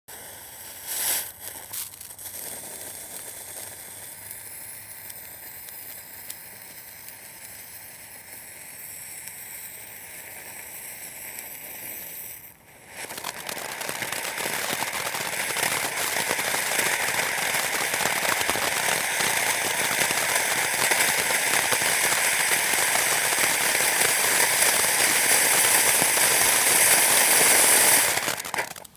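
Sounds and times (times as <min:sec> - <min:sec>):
firework fountain hissing crackle: 0:00.1 - 0:28.9.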